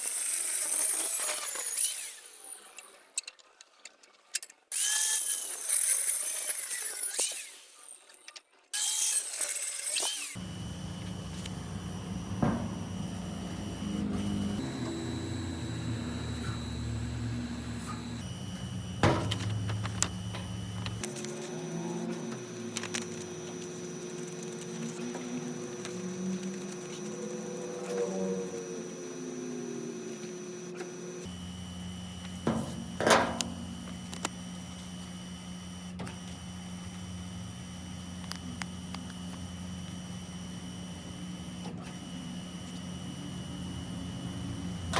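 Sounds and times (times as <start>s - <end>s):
low machine hum: 10.4s - 35.8s.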